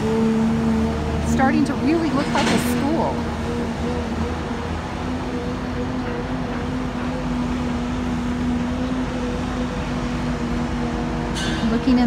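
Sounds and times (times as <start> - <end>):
construction machinery hum: 0.0 - 12.0.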